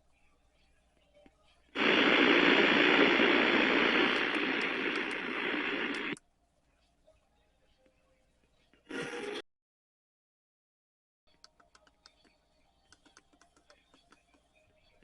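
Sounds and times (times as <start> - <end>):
radio static hiss: 1.8 - 6.2.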